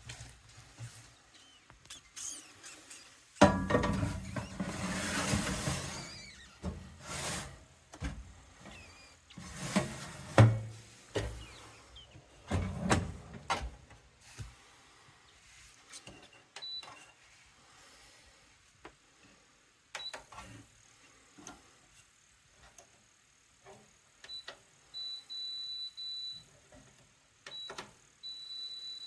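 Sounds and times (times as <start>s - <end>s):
appliance being handled: 3.4s - 8.8s.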